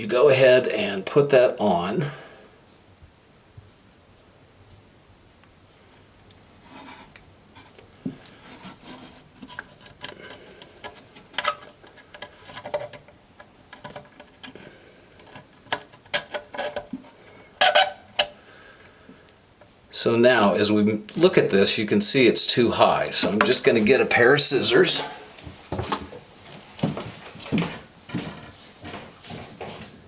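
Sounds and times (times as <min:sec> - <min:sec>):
plastic parts clicking and rubbing: 0:06.3 - 0:18.4.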